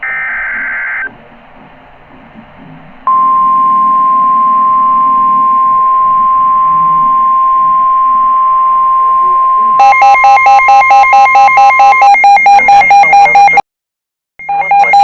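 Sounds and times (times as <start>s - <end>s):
steady warning alarm beep: 3.0s - 13.6s, 14.4s - 15.0s.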